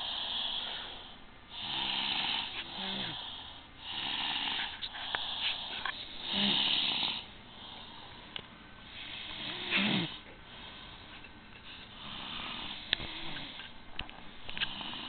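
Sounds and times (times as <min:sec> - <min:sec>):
person snoring: 0:00.0 - 0:07.3, 0:08.9 - 0:10.3, 0:12.0 - 0:13.6, 0:14.6 - 0:15.0.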